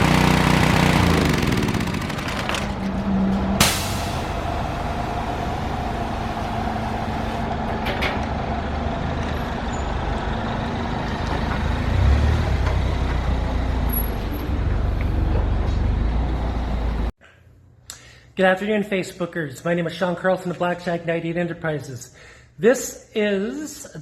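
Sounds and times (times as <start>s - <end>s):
pressure washer engine running: 0.0s - 3.0s, 3.6s - 9.2s.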